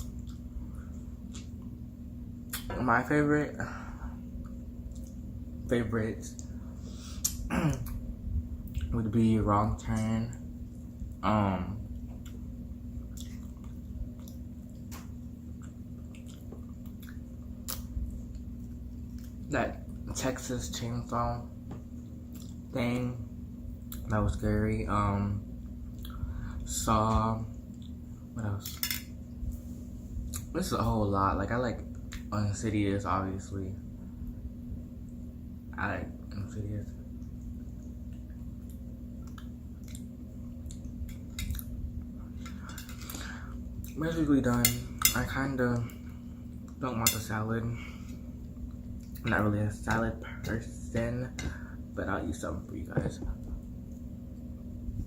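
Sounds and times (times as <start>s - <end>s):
faint steady hum: 0.0s - 55.0s
wet chewing: 12.1s - 19.5s.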